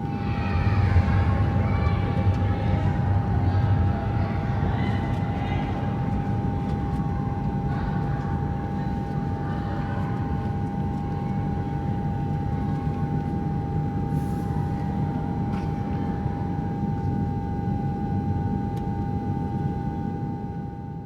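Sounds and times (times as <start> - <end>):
low mechanical rumble: 0.0 - 15.0.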